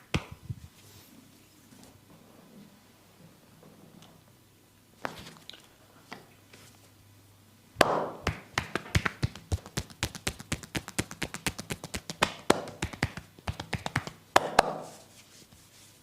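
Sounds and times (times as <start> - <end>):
hands slapping on body: 0.1 - 0.4, 7.8 - 15.0.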